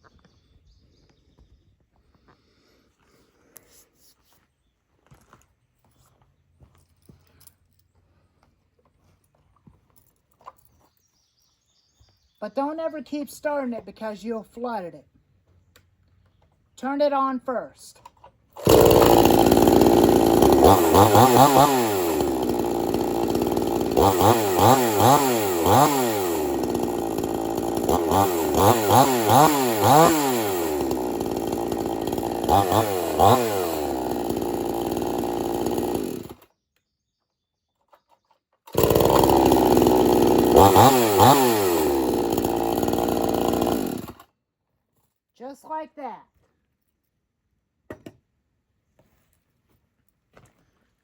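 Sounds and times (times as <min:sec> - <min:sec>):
chainsaw revving: 0:18.6 - 0:36.4, 0:38.7 - 0:44.2.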